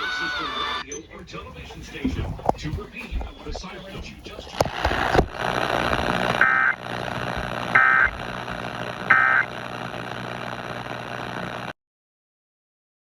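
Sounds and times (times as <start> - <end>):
background hum and hiss: 0.8 - 11.7
buzzy electronic data chirps: 6.1 - 8.2, 9.0 - 9.5.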